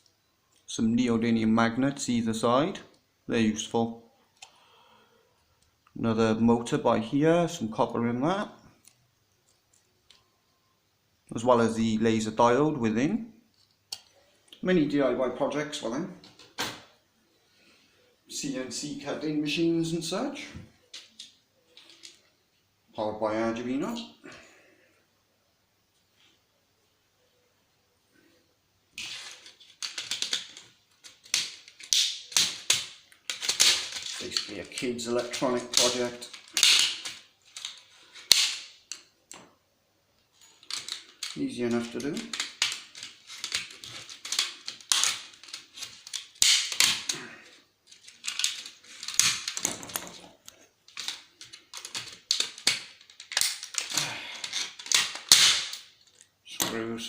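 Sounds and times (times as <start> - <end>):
plastic and metal parts clicking: 29.0 - 39.4, 40.4 - 47.2, 47.9 - 56.8.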